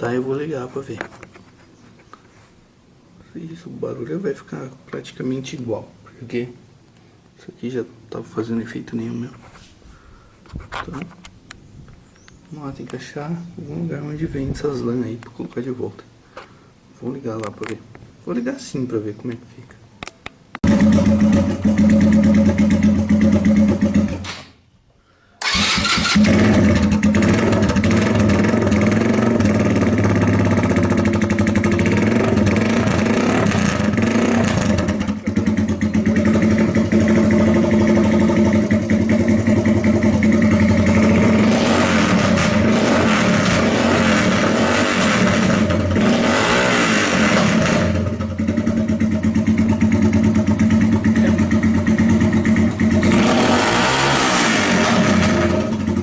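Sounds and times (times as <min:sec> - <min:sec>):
loud motorcycle engine running: 0:20.6 - 0:24.2, 0:25.5 - 0:56.0.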